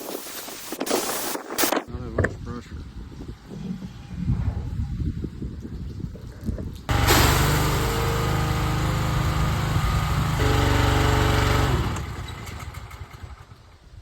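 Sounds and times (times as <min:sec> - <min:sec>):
high hiss: 0:00.0 - 0:01.8
pressure washer gas engine: 0:06.9 - 0:13.8.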